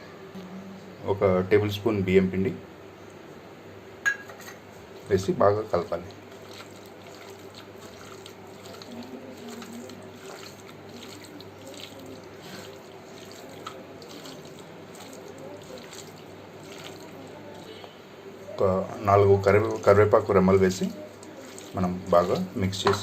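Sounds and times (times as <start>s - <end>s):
hands squelching wet food in bowl: 5.0s - 23.0s.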